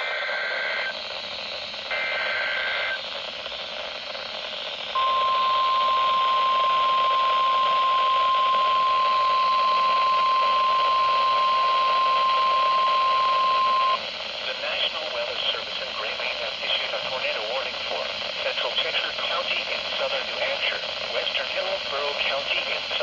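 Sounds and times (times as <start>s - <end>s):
radio static hiss: 0.0s - 23.0s
steady warning alarm tone: 4.9s - 14.0s.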